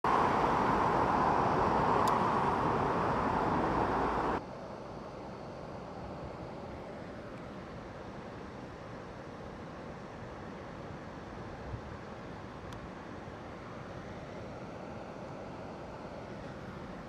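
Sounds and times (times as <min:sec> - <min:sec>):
river water rushing: 0:00.0 - 0:04.4.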